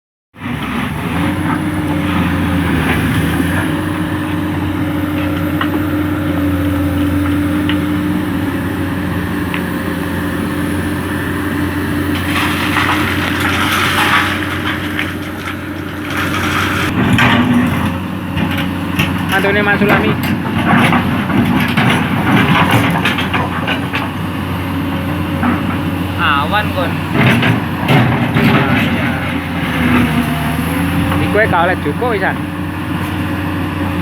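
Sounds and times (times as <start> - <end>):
excavator diesel engine running: 0.4 - 34.0
scraping rattle of stone: 12.1 - 18.0.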